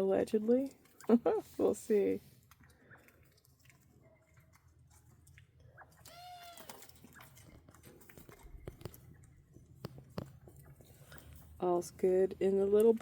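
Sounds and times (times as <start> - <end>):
birds pecking at seed: 0.0 - 13.0.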